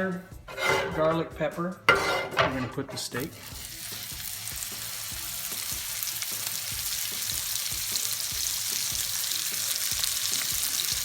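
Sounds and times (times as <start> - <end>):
steak sizzling in a pan: 3.2 - 11.0.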